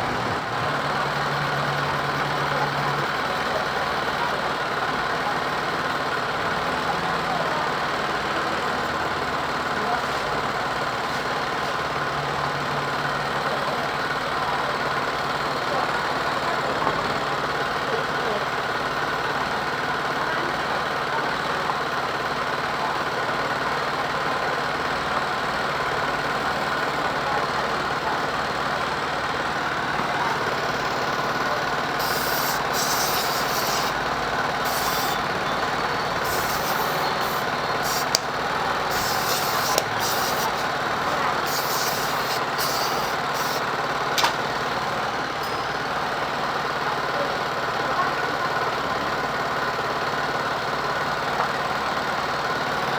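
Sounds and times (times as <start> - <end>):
machine running: 0.0 - 4.6, 28.6 - 43.9
high-pitched hissing bursts: 32.0 - 38.2, 38.8 - 43.6
sharp clicks: 37.4 - 38.4, 39.0 - 40.8.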